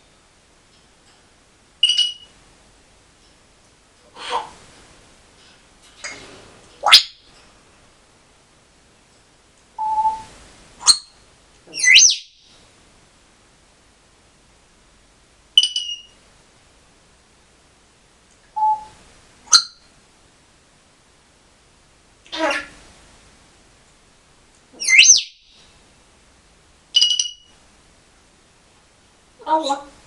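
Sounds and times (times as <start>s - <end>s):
parrot whistling and squawking: 1.8s - 2.3s, 6.8s - 7.2s, 9.8s - 11.1s, 11.7s - 12.3s, 15.6s - 16.2s, 18.6s - 18.9s, 19.5s - 19.8s, 24.8s - 25.5s, 27.0s - 27.5s.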